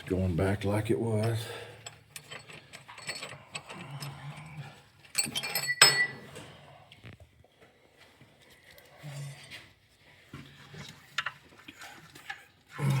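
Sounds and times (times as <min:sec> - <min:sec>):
metal tools clinking and scraping: 0:01.1 - 0:06.6.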